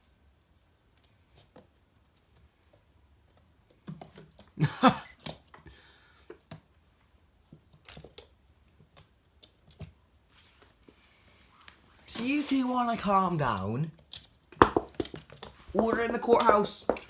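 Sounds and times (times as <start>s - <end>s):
kittens scuffling in a bucket: 11.9s - 13.1s, 14.7s - 17.0s.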